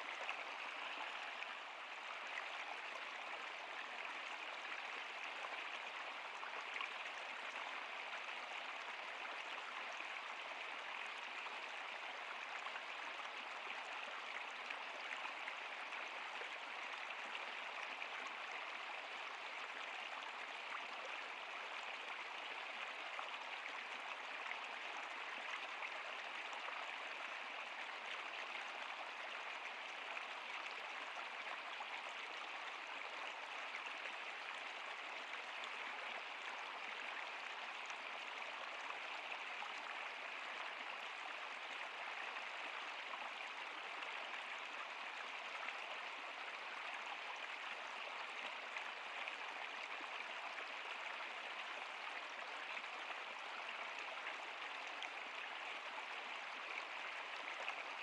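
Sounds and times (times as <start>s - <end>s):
river water flowing: 0.0s - 58.0s.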